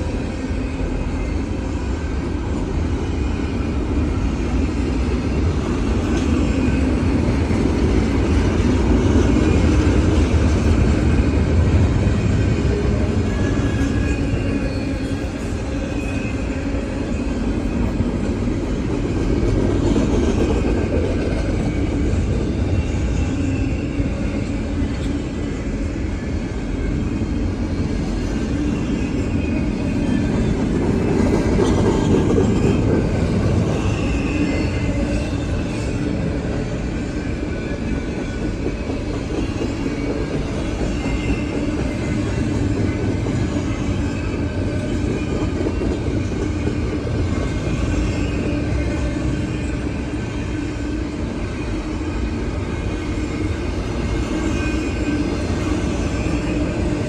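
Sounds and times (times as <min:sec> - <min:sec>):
train wheels rumbling on rail: 0:00.0 - 0:57.0
high wheel squeal: 0:12.3 - 0:18.0, 0:21.6 - 0:31.2, 0:32.8 - 0:36.3, 0:36.9 - 0:52.3, 0:53.0 - 0:57.0.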